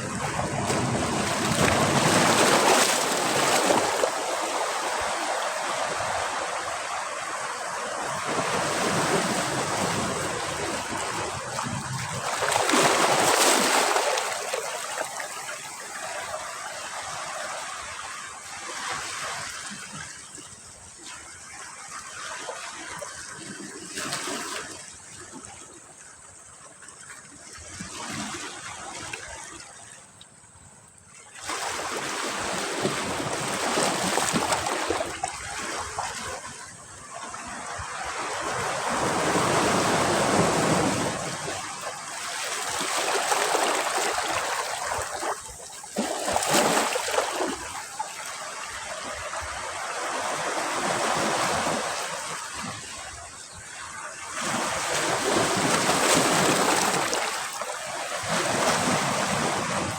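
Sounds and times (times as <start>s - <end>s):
waves breaking on a beach: 0.0s - 59.9s.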